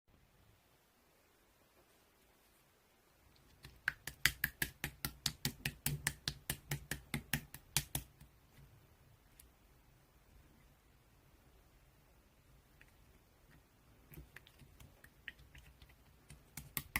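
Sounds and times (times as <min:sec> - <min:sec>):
slime clicking and popping: 0:14.2 - 0:16.9.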